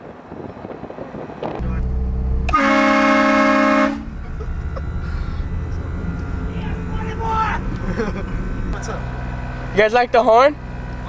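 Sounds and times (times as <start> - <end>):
low rumble: 1.6 - 11.0
air horn blast: 2.5 - 7.6.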